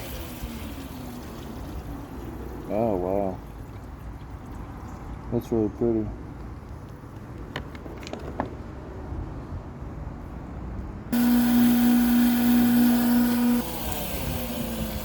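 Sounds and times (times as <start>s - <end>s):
wet tile saw motor running: 0.0s - 1.4s, 11.2s - 15.0s.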